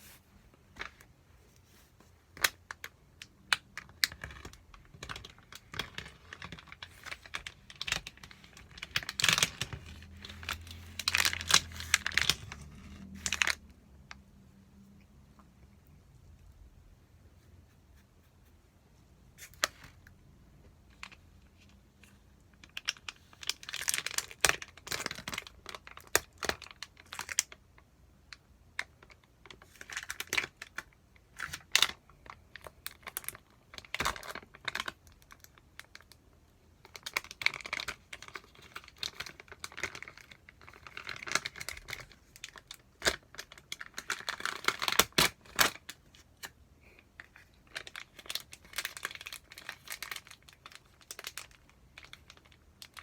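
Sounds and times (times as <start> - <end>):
plastic packaging tearing and crinkling: 3.8 - 13.7, 22.6 - 27.6, 28.8 - 36.2, 36.8 - 46.6, 47.6 - 53.0.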